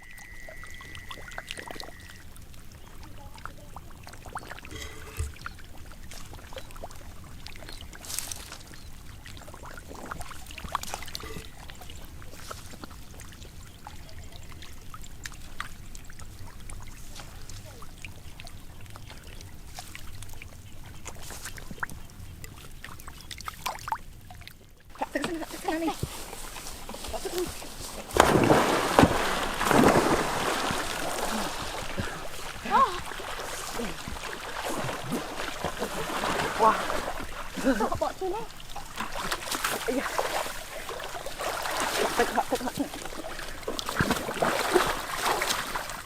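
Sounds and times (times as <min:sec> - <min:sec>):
shallow water splashing: 0:00.0 - 0:46.0
small clicks and drips: 0:00.1 - 0:27.4.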